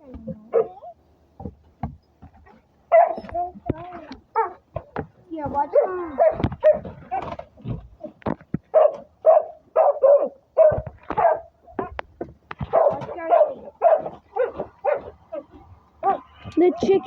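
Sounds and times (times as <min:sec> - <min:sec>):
dog barking: 0:00.5 - 0:00.8, 0:02.9 - 0:03.3, 0:04.4 - 0:04.6, 0:05.7 - 0:07.4, 0:08.7 - 0:12.0, 0:12.6 - 0:16.3.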